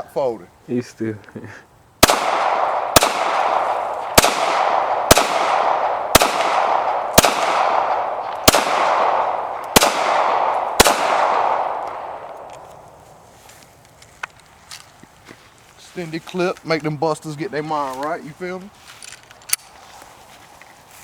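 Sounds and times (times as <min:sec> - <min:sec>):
pistol shots with echo: 0:02.0 - 0:12.5.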